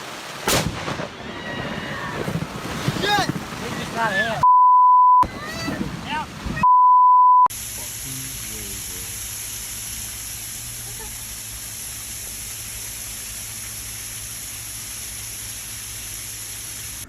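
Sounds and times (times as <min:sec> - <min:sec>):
heavy rain: 0:00.0 - 0:04.4, 0:05.2 - 0:06.6, 0:07.5 - 0:17.0
high censor beep: 0:04.4 - 0:05.2, 0:06.6 - 0:07.5.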